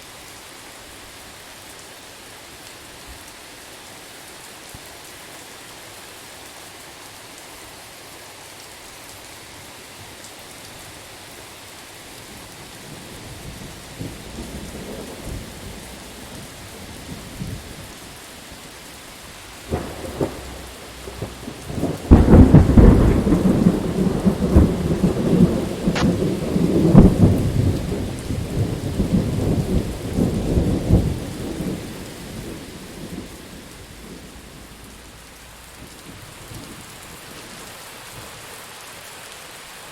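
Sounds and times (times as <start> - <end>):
steady rain falling: 0.0 - 39.9
thunder rumbling: 12.8 - 18.2, 19.6 - 37.2
sharp thunder crack: 19.7 - 31.8
loud thunderclap: 19.7 - 35.1.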